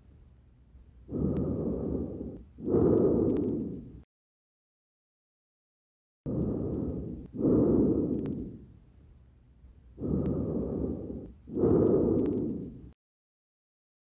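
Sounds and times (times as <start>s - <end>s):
breath sounds through stethoscope: 1.1s - 4.1s, 6.3s - 8.8s, 10.0s - 13.0s.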